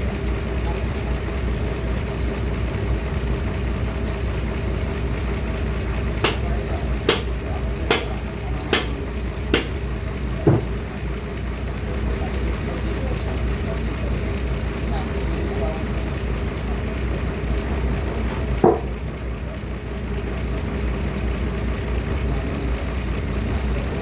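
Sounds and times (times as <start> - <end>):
machine engine running: 0.0 - 24.0
dull thud: 9.6 - 10.8.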